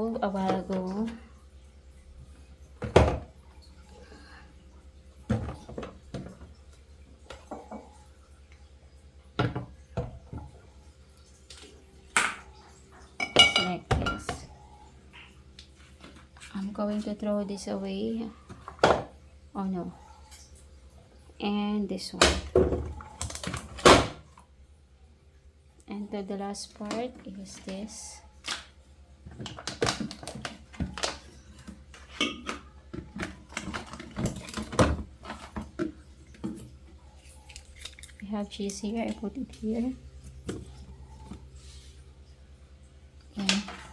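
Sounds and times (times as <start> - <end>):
plastic racks knocking and clunking: 2.8 - 3.4, 5.3 - 6.6, 22.2 - 24.3, 29.2 - 36.6
food containers clattering on shelves: 29.3 - 36.5.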